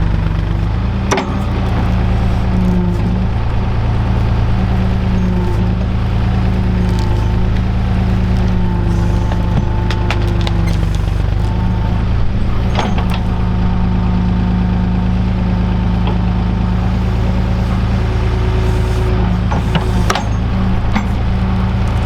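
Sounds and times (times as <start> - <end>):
roots cracking sharply: 0.0 - 13.6
heavy machine engine running: 0.0 - 22.0.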